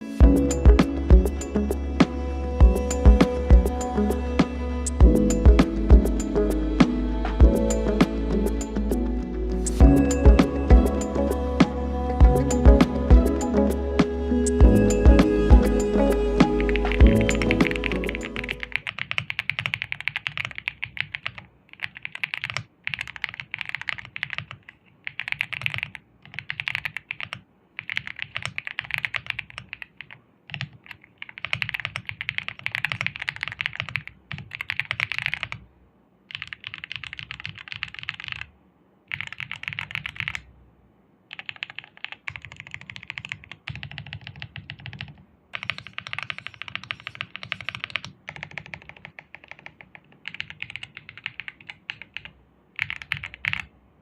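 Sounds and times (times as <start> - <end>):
mechanical keyboard typing: 16.4 - 35.6, 36.3 - 38.5, 39.1 - 40.5, 41.3 - 53.7.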